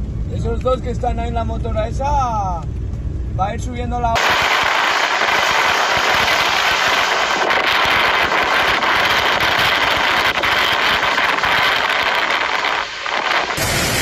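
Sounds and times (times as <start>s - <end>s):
wind buffeting microphone: 4.2s - 14.0s.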